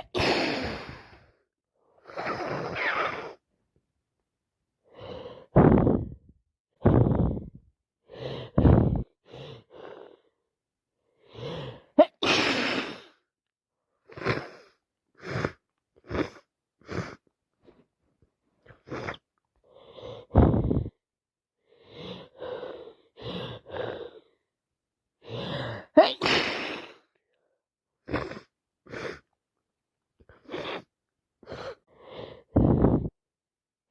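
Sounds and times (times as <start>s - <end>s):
woman sneezing: 0.0s - 0.7s, 12.0s - 13.0s, 26.0s - 27.0s
sniffs and breaths: 4.8s - 6.2s, 6.8s - 10.4s, 14.0s - 17.9s, 18.6s - 21.0s, 21.6s - 24.4s, 28.0s - 29.4s, 30.2s - 33.1s.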